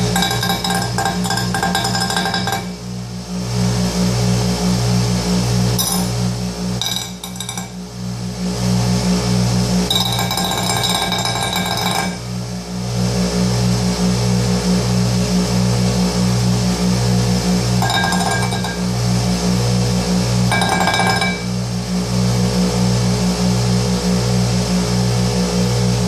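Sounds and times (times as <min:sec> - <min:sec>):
steel scraping on grinding wheel: 0:00.0 - 0:02.8, 0:06.8 - 0:07.8, 0:09.9 - 0:12.3, 0:17.8 - 0:19.0
grinder motor hum: 0:00.0 - 0:03.0, 0:05.8 - 0:07.9, 0:09.7 - 0:12.6, 0:17.1 - 0:21.8.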